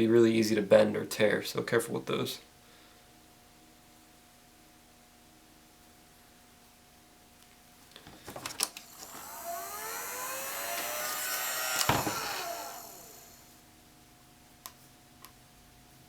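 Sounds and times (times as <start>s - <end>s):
hot-air blower fan motor: 7.9s - 13.6s.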